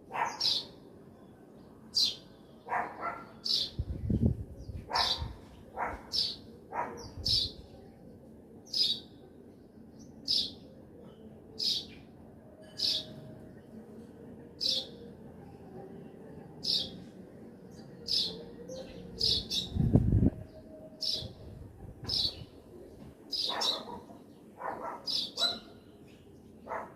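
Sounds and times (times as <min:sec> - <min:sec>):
small birds chirping: 0:00.1 - 0:00.8, 0:01.9 - 0:08.0, 0:23.3 - 0:26.9.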